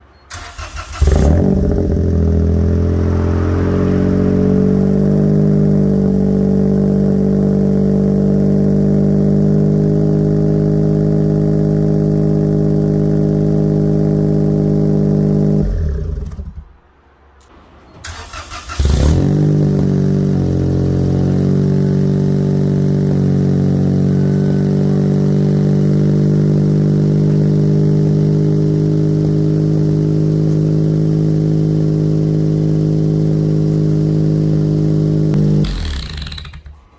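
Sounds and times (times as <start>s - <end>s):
engine starting: 0.3s - 1.8s, 17.8s - 19.8s, 35.6s - 36.9s
small turbo engine idling: 0.7s - 16.7s, 18.2s - 36.8s.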